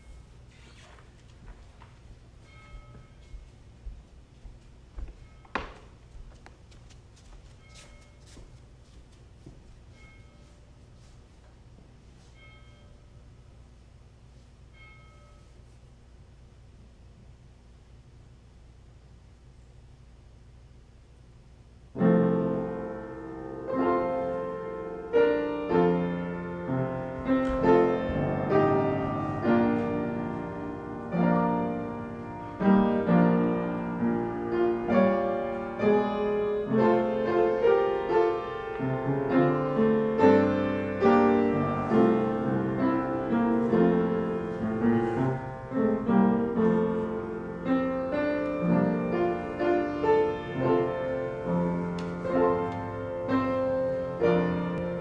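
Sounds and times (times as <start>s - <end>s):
slow classical piano chords: 21.9s - 55.0s.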